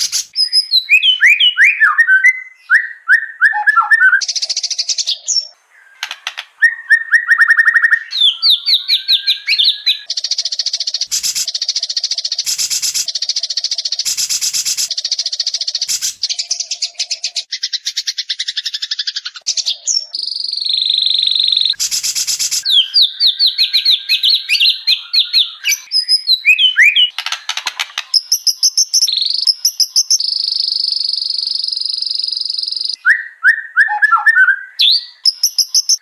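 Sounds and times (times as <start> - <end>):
bird singing trills and whistles: 0.0 - 36.0
harsh rasping bird call: 11.0 - 11.6.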